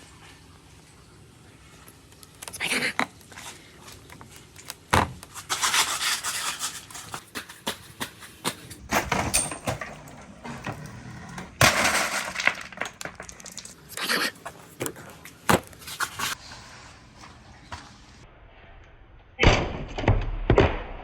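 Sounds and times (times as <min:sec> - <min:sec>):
glass marbles clattering down wooden run: 0:11.6 - 0:14.0.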